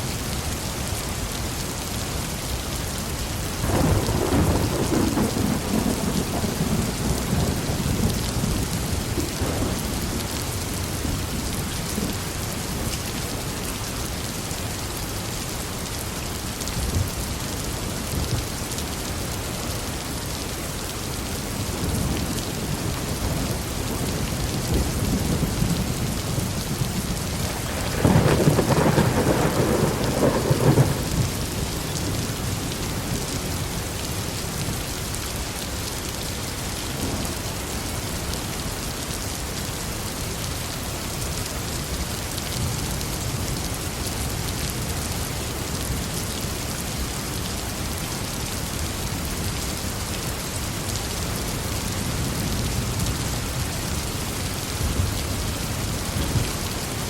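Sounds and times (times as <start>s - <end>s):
heavy rain falling: 0.0s - 57.0s
thunder rumbling: 3.6s - 12.2s, 21.9s - 33.4s.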